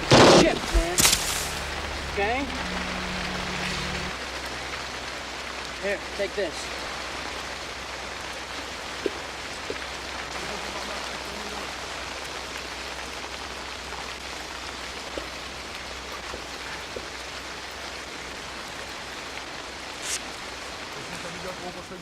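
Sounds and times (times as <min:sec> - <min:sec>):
steady rain hiss: 0:00.0 - 0:22.0.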